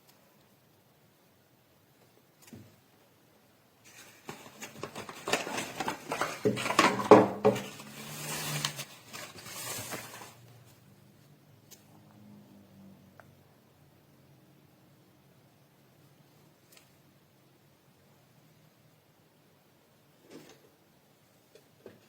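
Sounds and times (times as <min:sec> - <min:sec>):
hands handling small hard objects: 0:03.9 - 0:10.4.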